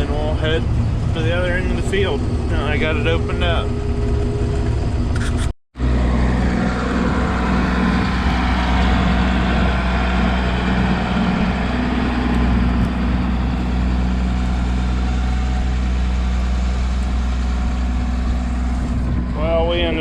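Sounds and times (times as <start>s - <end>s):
combine harvester engine drone: 0.0s - 20.0s.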